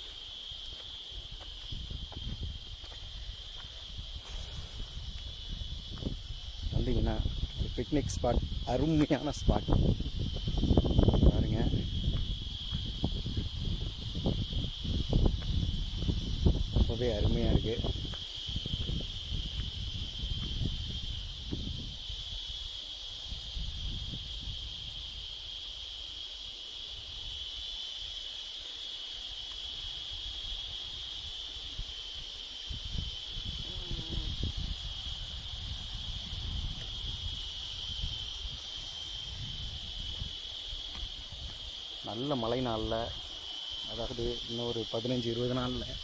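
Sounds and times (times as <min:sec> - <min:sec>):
insects droning: 0:00.0 - 0:46.0
low rumble on microphone: 0:01.2 - 0:22.1.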